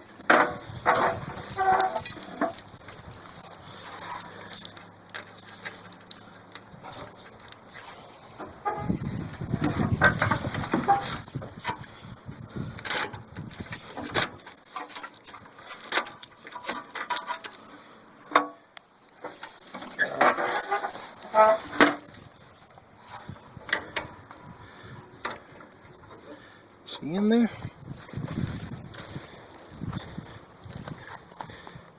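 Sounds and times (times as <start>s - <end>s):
wiring harness rustling and clicking: 0.0s - 31.9s
plastic connectors clattering: 0.1s - 7.8s, 8.4s - 12.0s, 12.6s - 17.7s.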